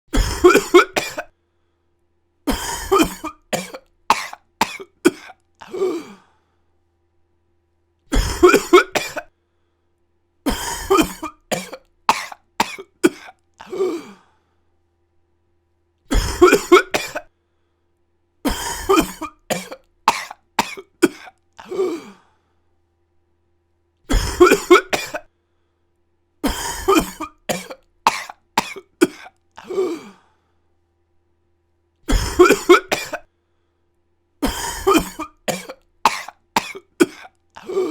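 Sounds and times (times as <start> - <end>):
person coughing: 0.1 - 1.4, 2.5 - 6.3, 8.1 - 9.3, 10.5 - 14.2, 16.1 - 17.3, 18.5 - 22.3, 24.1 - 25.3, 26.4 - 30.2, 32.1 - 33.3, 34.4 - 37.9.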